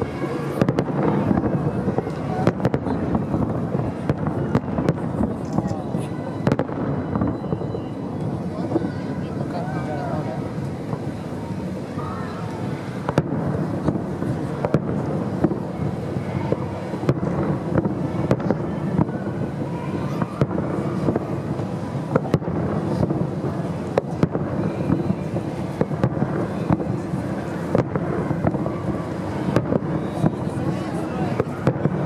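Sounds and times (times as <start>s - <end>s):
fireworks bangs: 0.0s - 32.0s.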